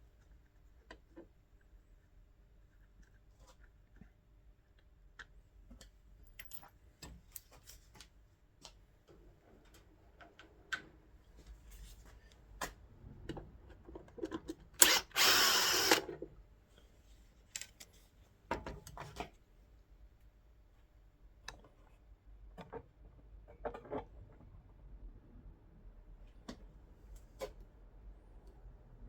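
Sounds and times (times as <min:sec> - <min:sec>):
cordless drill backing out screw: 0:14.8 - 0:16.2.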